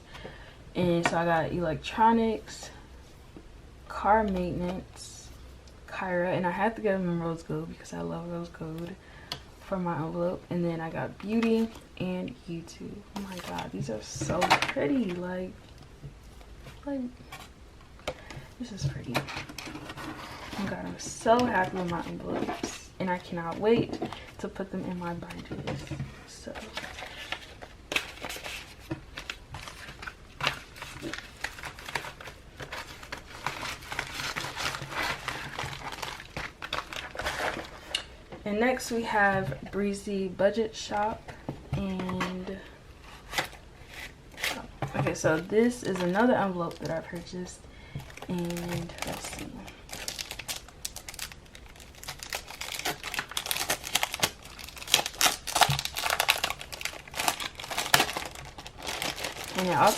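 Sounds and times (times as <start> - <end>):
packaging crinkling: 26.5 - 38.1, 48.0 - 59.9.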